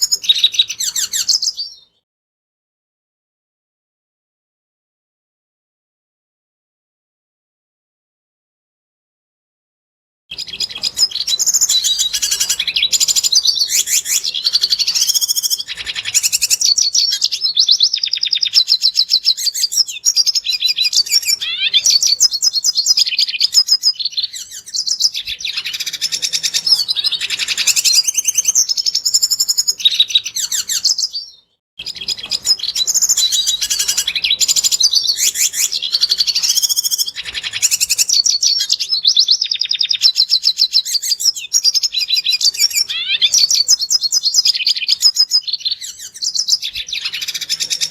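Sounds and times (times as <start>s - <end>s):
bird twittering song: 0.0s - 2.0s, 10.3s - 47.9s.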